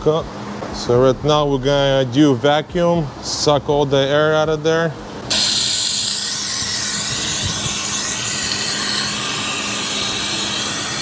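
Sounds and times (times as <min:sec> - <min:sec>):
vacuum tool hissing: 0:05.3 - 0:11.0.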